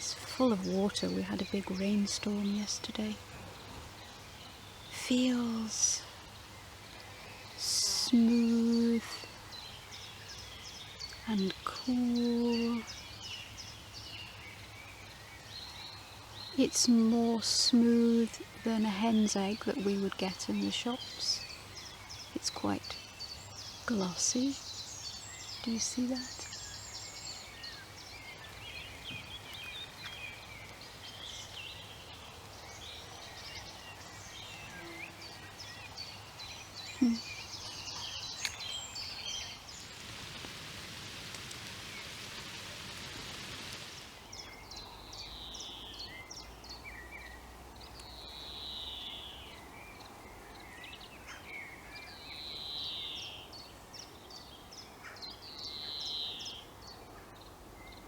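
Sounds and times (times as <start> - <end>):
soft hiss: 0.0 - 46.2
birds singing and chirping: 0.0 - 58.0.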